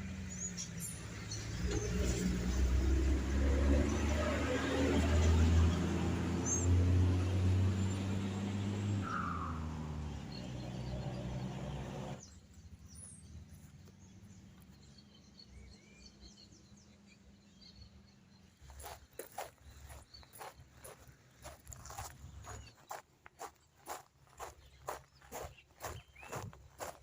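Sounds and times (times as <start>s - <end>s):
vehicle engine running: 0.0s - 14.9s
birds chirping: 0.0s - 27.0s.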